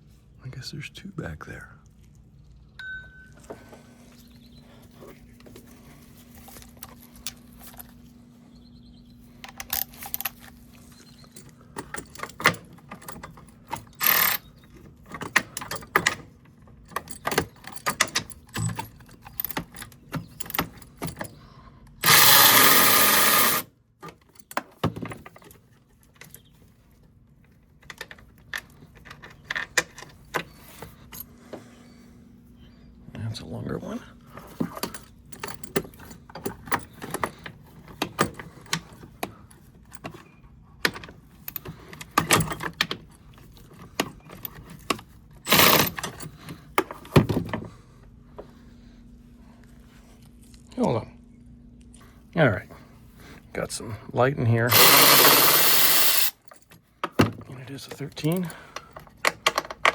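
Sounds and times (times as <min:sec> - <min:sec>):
ratchet and socket clicking: 0:22.0 - 0:23.6, 0:45.5 - 0:46.2, 0:54.7 - 0:56.4.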